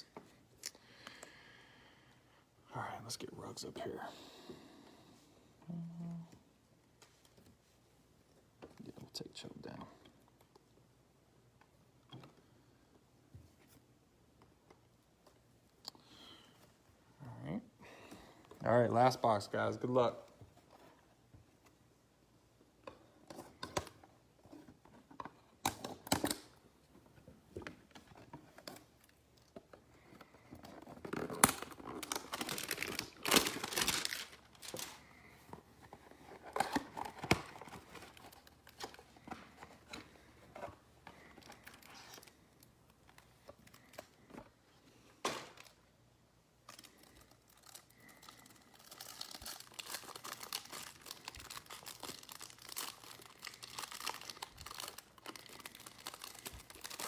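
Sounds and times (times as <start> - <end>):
foil packs tearing and crinkling: 31.0 - 35.0, 46.7 - 57.0.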